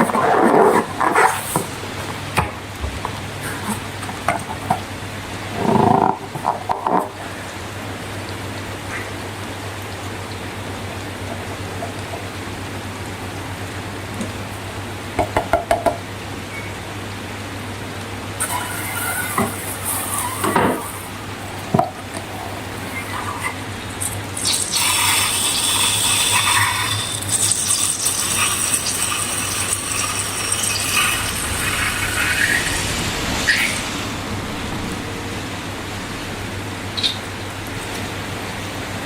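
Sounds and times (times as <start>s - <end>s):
steady low hum: 30.4s - 39.0s.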